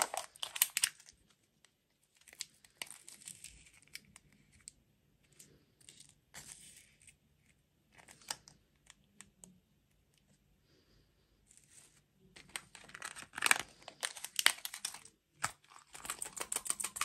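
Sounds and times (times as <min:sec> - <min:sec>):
plastic packaging crinkling: 0:00.0 - 0:01.2, 0:12.4 - 0:17.0.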